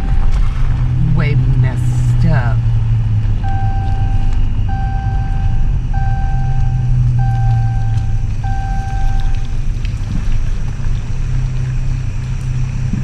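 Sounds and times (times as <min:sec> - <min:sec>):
engine humming: 0:00.0 - 0:13.0
seatbelt warning chime beeps: 0:03.4 - 0:09.4.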